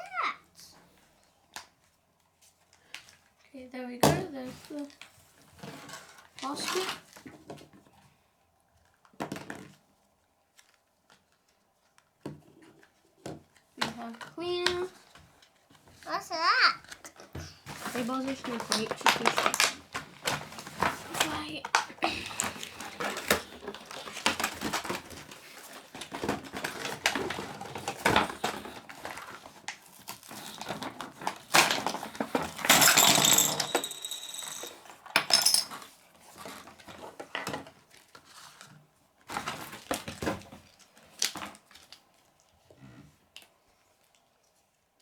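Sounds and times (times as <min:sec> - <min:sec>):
plastic toys clicking and clattering: 0:04.1 - 0:07.7, 0:16.0 - 0:38.6.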